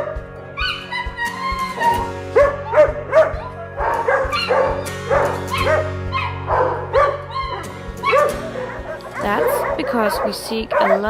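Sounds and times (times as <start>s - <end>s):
background music: 0.0s - 11.0s
dogs barking and yelping: 0.0s - 11.0s.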